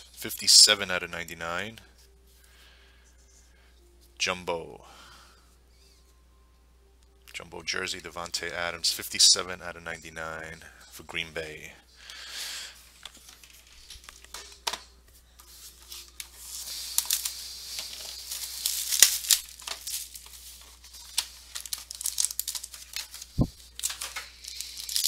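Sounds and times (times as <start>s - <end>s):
packaging torn and crinkled: 15.8s - 25.0s.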